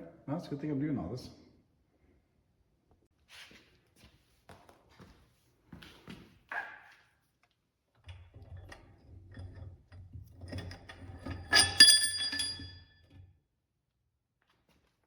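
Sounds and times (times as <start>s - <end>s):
ringing metal clanks: 10.4s - 13.2s.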